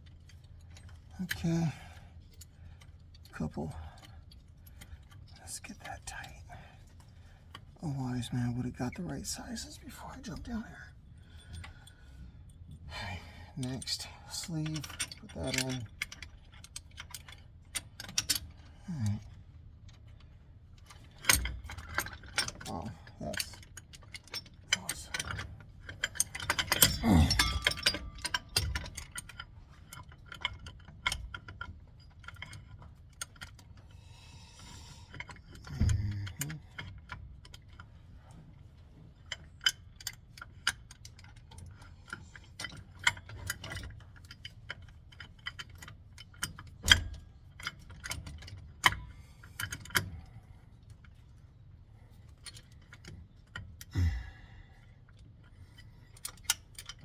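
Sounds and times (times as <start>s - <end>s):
metal tools clicking and clinking: 13.6s - 19.3s, 20.8s - 33.6s, 39.2s - 50.3s, 55.4s - 57.0s.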